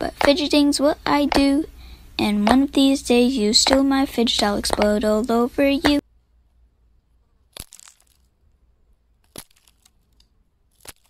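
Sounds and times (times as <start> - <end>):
sharp crunching cracks: 7.4 - 8.5, 9.2 - 11.0.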